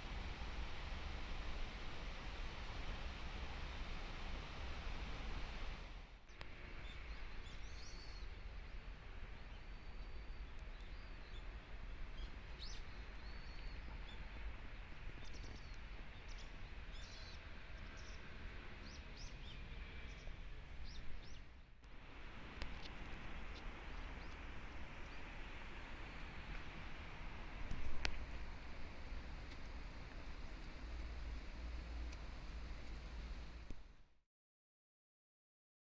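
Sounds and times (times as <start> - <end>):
background hiss: 0.0 - 34.1
small birds chirping: 6.3 - 8.8, 9.4 - 21.7.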